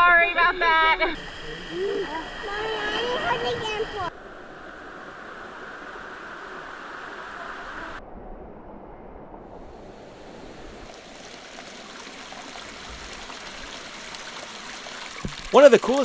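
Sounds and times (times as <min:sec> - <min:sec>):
waterfall rushing: 0:01.2 - 0:08.0.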